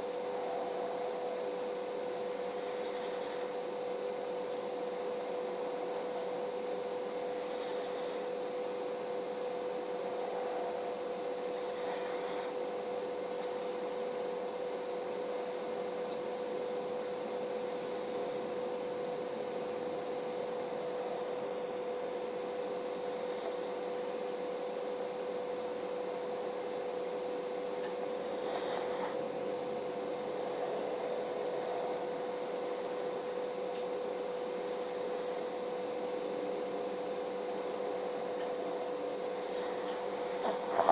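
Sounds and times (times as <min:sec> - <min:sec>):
steady hum: 0:00.0 - 0:40.9
pet snoring: 0:02.2 - 0:03.7, 0:07.0 - 0:08.4, 0:10.1 - 0:12.7, 0:17.6 - 0:18.6, 0:22.7 - 0:24.0, 0:27.6 - 0:32.6, 0:34.5 - 0:35.8, 0:38.2 - 0:40.9.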